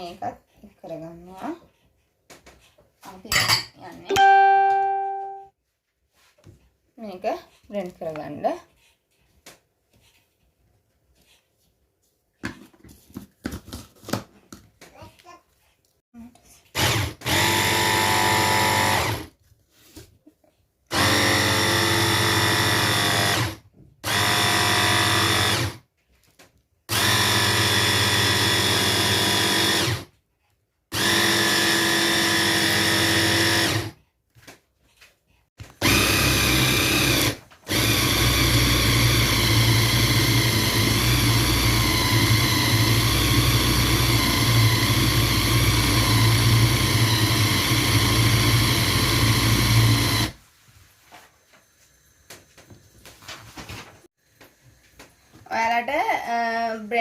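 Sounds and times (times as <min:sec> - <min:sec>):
electric blender running: 0:16.7 - 0:19.3, 0:20.9 - 0:25.8, 0:26.9 - 0:30.1, 0:30.9 - 0:34.0, 0:35.8 - 0:50.4.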